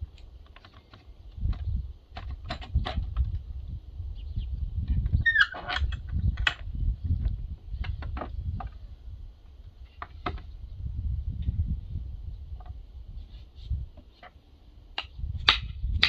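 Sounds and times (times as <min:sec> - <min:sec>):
creaking squeak: 0:05.1 - 0:06.2.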